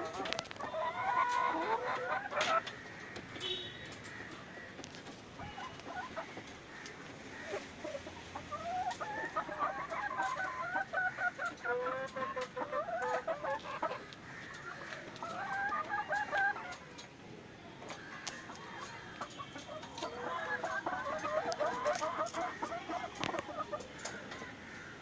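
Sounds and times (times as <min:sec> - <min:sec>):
hens clucking: 0:00.0 - 0:25.0.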